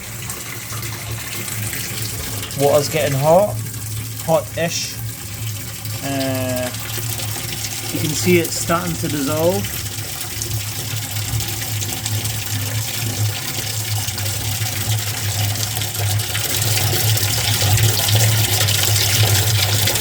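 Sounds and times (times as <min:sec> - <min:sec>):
water pouring into washing machine: 0:00.0 - 0:20.0
low steady hum: 0:02.0 - 0:09.9.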